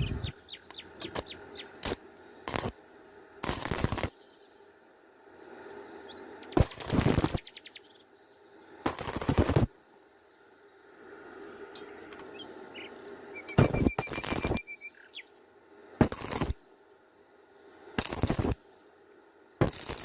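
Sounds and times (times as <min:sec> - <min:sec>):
welding arc crackling: 0:01.0 - 0:02.8, 0:03.4 - 0:04.1, 0:06.6 - 0:07.4, 0:08.9 - 0:09.7, 0:13.5 - 0:14.6, 0:16.0 - 0:16.6, 0:18.0 - 0:18.6, 0:19.6 - 0:20.0.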